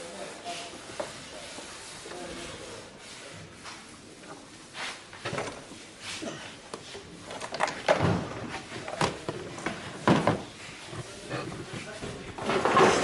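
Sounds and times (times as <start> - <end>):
knocks and clunks of tools: 6.7 - 10.6.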